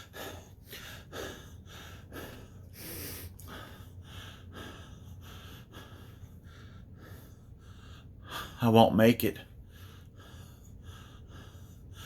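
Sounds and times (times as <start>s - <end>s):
man gasping breaths: 0.0s - 8.6s.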